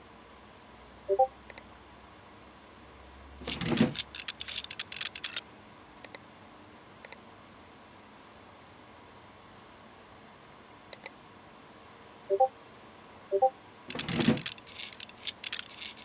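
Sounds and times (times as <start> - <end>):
small hard objects clicking: 4.0 - 5.4, 13.9 - 16.0.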